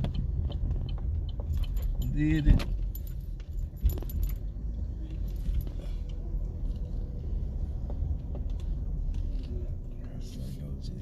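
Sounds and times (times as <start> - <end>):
car running rumble: 0.0 - 11.0
keys jingling: 1.5 - 6.1.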